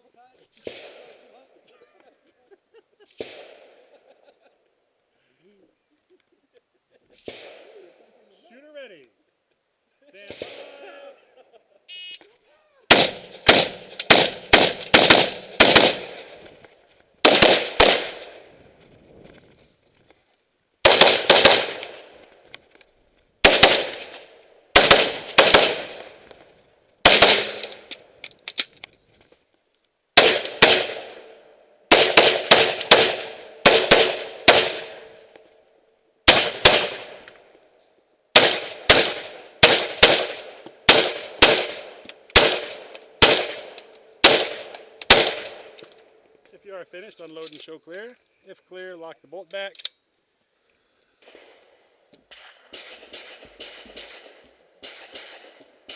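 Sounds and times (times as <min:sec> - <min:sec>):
rifle shots with echo: 0:00.6 - 0:01.4, 0:03.1 - 0:04.0, 0:07.2 - 0:07.9, 0:10.2 - 0:10.8, 0:12.9 - 0:16.4, 0:17.2 - 0:18.5, 0:20.8 - 0:22.2, 0:23.4 - 0:26.2, 0:27.0 - 0:27.9, 0:30.2 - 0:35.3, 0:36.2 - 0:37.3, 0:38.3 - 0:45.8, 0:52.3 - 0:55.9.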